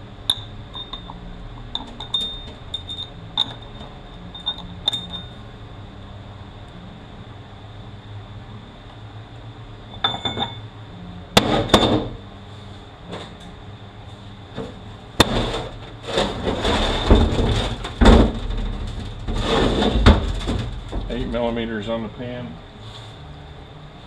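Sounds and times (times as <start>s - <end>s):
metal parts clanking on a bench: 0.3s - 5.3s, 9.9s - 10.6s.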